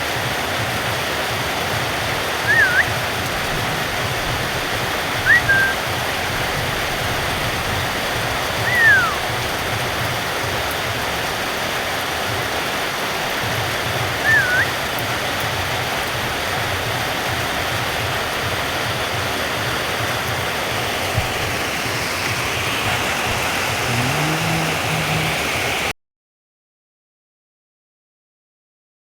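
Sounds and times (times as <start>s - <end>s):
heavy rain: 0.0s - 25.9s
parrot whistled chirp: 2.4s - 3.1s, 5.2s - 5.9s, 8.6s - 9.3s, 14.2s - 14.8s.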